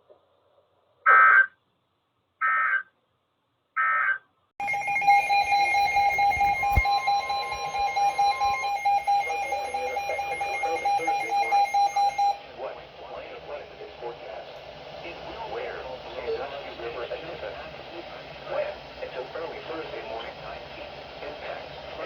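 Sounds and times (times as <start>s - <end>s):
steady alert tone: 4.6s - 12.4s
digital data bursts: 4.6s - 14.2s
hissy fluttering background: 4.6s - 22.0s.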